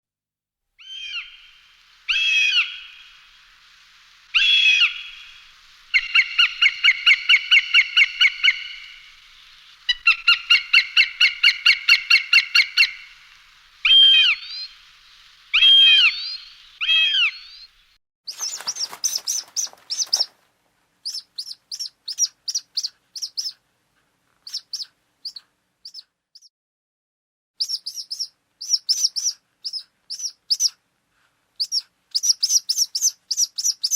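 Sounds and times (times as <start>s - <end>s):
faint hiss: 0.7s - 26.4s, 27.6s - 33.9s
hawk calling: 0.8s - 3.5s, 4.3s - 20.3s.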